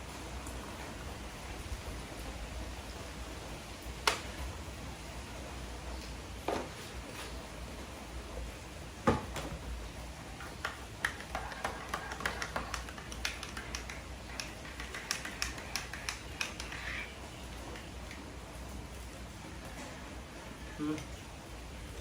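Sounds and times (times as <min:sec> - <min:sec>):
faint steady hum: 0:00.0 - 0:22.0
light clicks and taps: 0:10.4 - 0:18.3.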